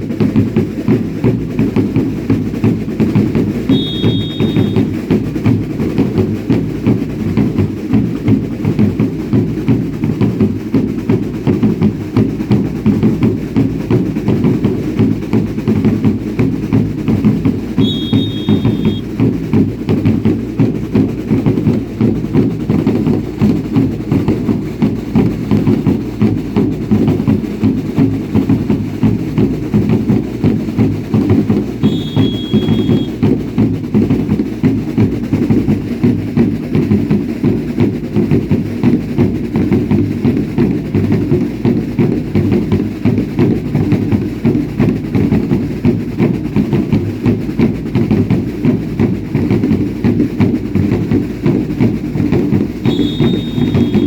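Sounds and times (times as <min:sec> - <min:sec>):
drums beating fast rhythm: 0:00.0 - 0:54.0
short high whistle: 0:03.7 - 0:05.0, 0:17.8 - 0:19.1, 0:31.8 - 0:33.2, 0:52.8 - 0:54.0.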